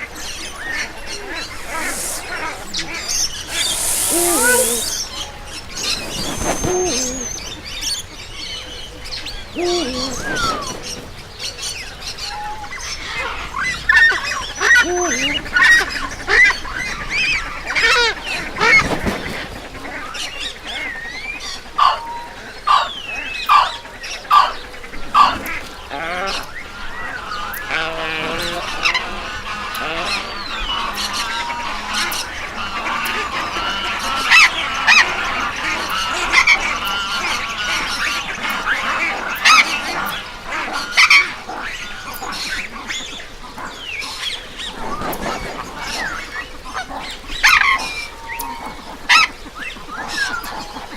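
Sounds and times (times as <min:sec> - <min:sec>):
geese honking: 0:00.6 - 0:05.1.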